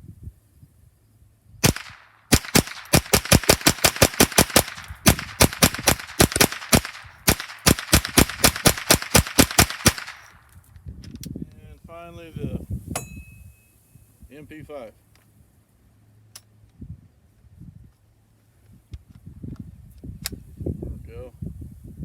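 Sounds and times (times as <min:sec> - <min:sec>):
rapid rifle gunshots: 0:01.6 - 0:10.4.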